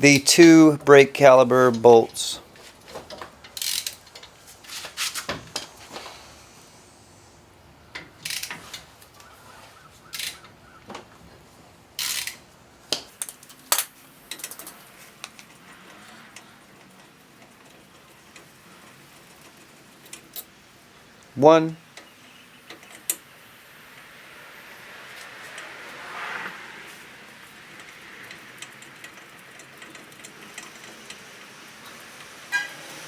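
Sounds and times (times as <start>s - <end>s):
ratchet clicks: 2.9s - 4.4s, 7.9s - 8.9s, 10.1s - 10.5s, 12.0s - 20.5s, 27.7s - 32.4s.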